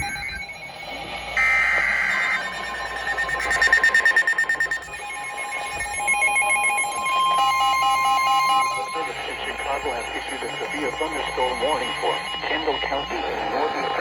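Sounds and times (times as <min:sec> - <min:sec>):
beeping tones: 0:00.0 - 0:14.0
digital header tones: 0:00.0 - 0:14.0
rapidly pulsing tone: 0:00.0 - 0:14.0.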